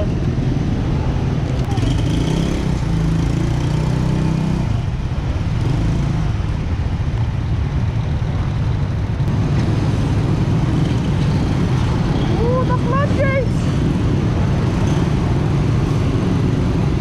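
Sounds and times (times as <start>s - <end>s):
engine hum: 0.0s - 17.0s
traffic noise: 0.0s - 17.0s.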